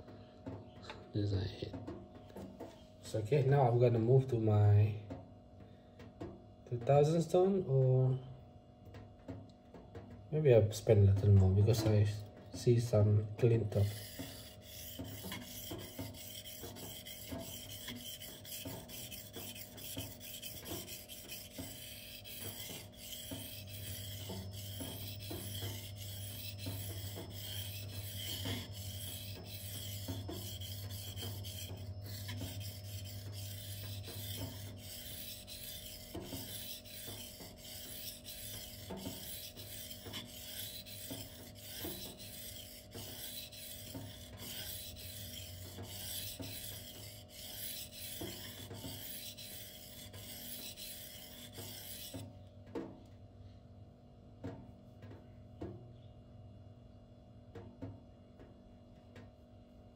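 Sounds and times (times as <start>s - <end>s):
knife scraping on whetstone: 12.6s - 52.3s.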